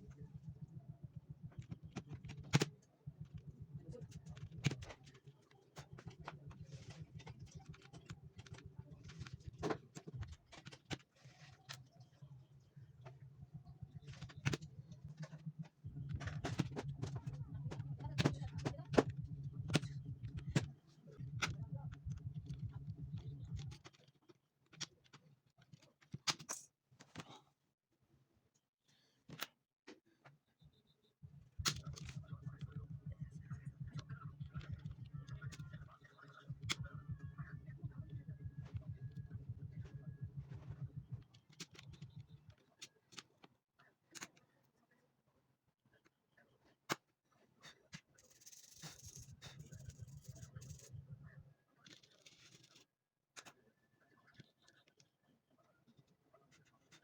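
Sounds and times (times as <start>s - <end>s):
low steady hum: 0.0s - 24.0s, 30.6s - 42.7s, 48.2s - 52.4s.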